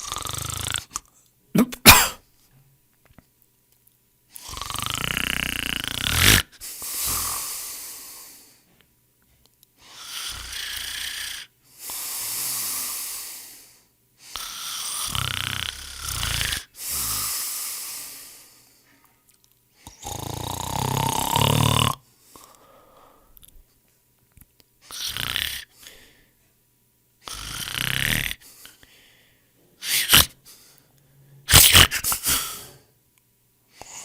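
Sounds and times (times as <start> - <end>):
person snoring: 0.0 - 1.0, 4.4 - 8.5, 9.8 - 18.6, 19.8 - 23.2, 24.9 - 26.2, 27.2 - 28.8, 29.8 - 30.4
airy breath out: 6.2 - 8.7.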